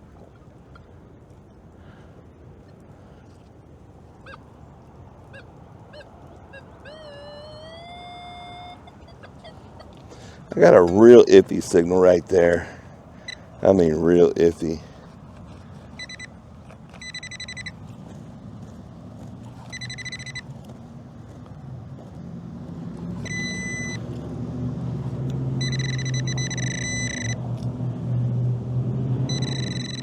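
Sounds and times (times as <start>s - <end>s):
metal detector tones: 6.5s - 9.6s, 16.0s - 17.8s, 19.6s - 20.5s, 23.2s - 24.2s, 25.5s - 27.4s, 29.3s - 30.0s.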